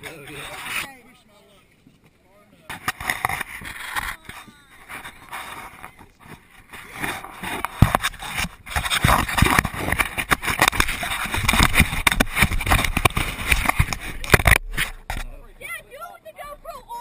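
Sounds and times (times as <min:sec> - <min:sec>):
off-road vehicle jostling and rumbling: 0:07.4 - 0:15.4.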